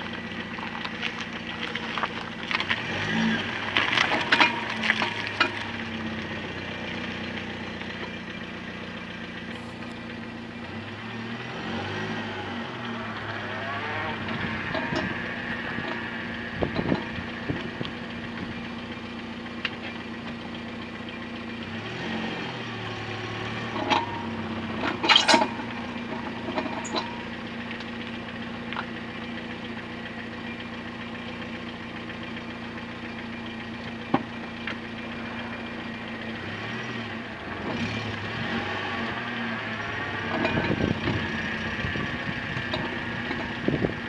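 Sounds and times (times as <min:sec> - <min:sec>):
wheel knocking: 0:00.0 - 0:08.2, 0:12.7 - 0:20.7, 0:22.8 - 0:29.2, 0:39.8 - 0:44.0
car engine droning: 0:00.0 - 0:44.0.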